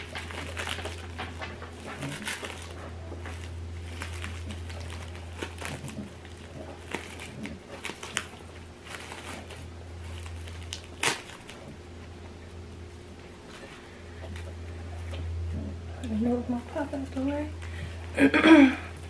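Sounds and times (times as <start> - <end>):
plastic wrap crinkling and tearing: 0.0 - 11.9
steady low hum: 0.0 - 19.0.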